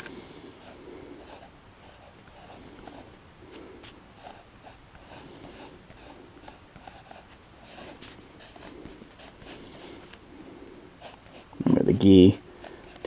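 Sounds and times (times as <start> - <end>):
pencil scratching on paper: 0.6 - 3.1, 3.8 - 10.2, 11.0 - 11.7, 12.3 - 13.0.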